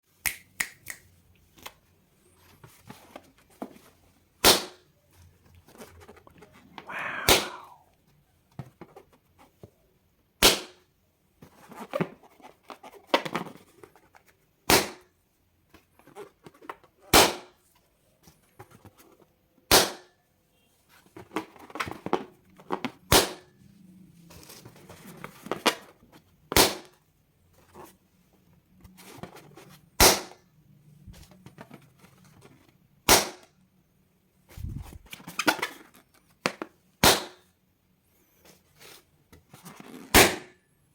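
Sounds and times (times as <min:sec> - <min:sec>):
soft handling noise: 0:01.0 - 0:06.9, 0:17.6 - 0:19.6, 0:20.6 - 0:29.9, 0:30.8 - 0:33.0, 0:34.3 - 0:36.9, 0:38.1 - 0:40.1
balloons popping: 0:06.9 - 0:07.8.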